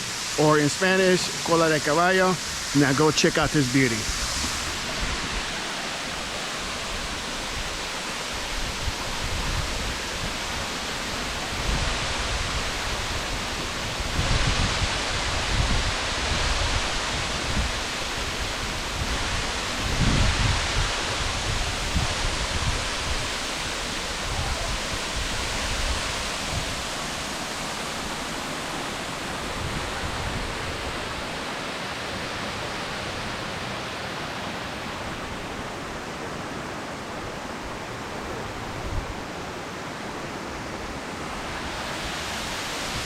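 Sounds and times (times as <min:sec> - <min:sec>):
waterfall roaring: 0:00.0 - 0:43.0
wind buffeting microphone: 0:11.5 - 0:23.4.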